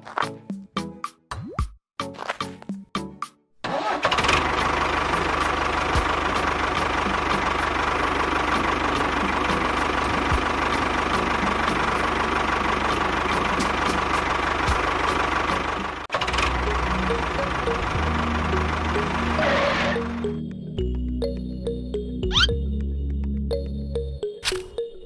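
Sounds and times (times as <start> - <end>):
motor running with ticking knock: 10.0 - 10.8.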